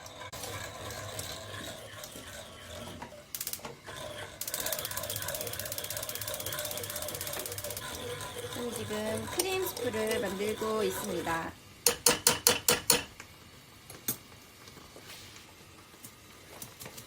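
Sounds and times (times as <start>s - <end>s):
rapid mechanical clicking: 3.3s - 3.7s, 4.4s - 8.6s.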